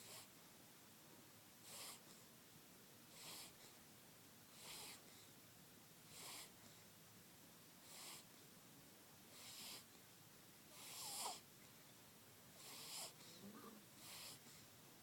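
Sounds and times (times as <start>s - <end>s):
faint wheezy snoring: 0.0s - 0.3s, 1.6s - 2.2s, 3.1s - 3.8s, 4.5s - 5.3s, 6.1s - 6.8s, 7.8s - 8.4s, 9.3s - 9.9s, 10.7s - 11.5s, 12.6s - 14.7s.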